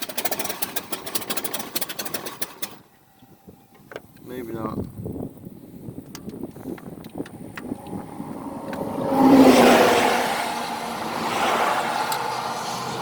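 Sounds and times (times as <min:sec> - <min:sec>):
engine revving: 0:07.4 - 0:13.0.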